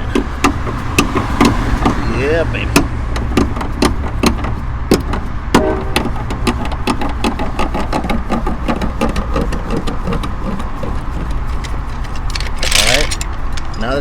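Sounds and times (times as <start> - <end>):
car jack clicking: 0.0 - 14.0
metallic knocks: 0.0 - 14.0.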